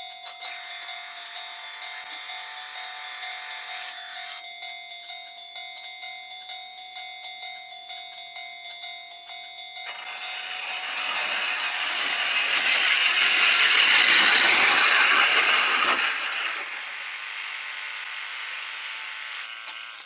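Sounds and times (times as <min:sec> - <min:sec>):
model train rattling on track: 0:09.8 - 0:20.0.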